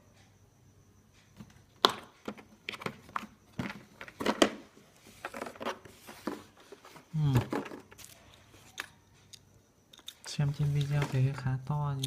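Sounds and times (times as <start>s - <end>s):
plastic case clicks and knocks: 1.4s - 4.6s.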